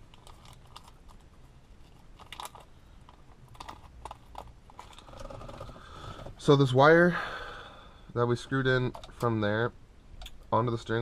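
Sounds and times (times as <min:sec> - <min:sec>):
small parts and screws clicking: 0:00.0 - 0:05.8.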